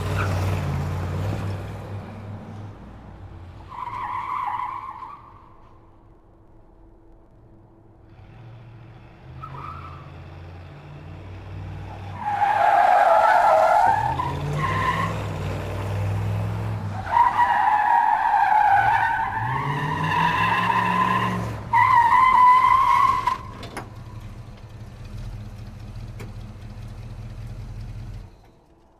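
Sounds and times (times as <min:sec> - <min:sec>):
car engine revving: 0:00.0 - 0:03.7, 0:08.2 - 0:28.4
tyres squealing: 0:11.6 - 0:24.5.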